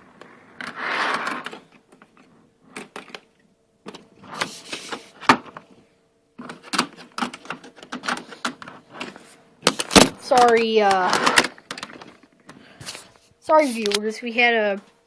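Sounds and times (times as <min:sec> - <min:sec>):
toy train cars clicking and rattling: 0:09.8 - 0:12.2.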